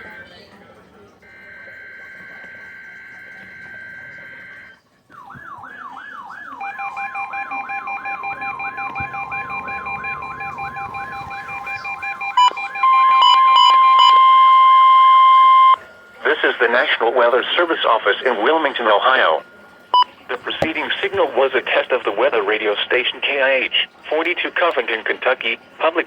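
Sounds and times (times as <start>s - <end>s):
loud steady warning alarm tone: 0.0s - 0.4s, 1.2s - 26.0s
warbling siren-like alert: 1.2s - 21.5s.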